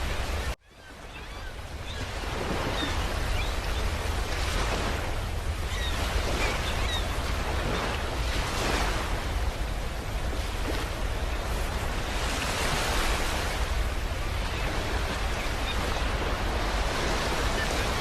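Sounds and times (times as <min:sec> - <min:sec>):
rushing surf with deep rumble: 0:00.0 - 0:18.0.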